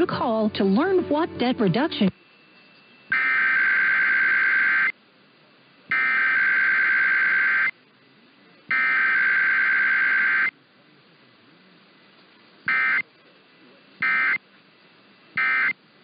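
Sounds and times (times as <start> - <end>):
digital data tone bursts: 2.1 - 5.0, 5.9 - 7.7, 8.7 - 10.5, 12.7 - 13.1, 14.0 - 14.4, 15.4 - 15.8.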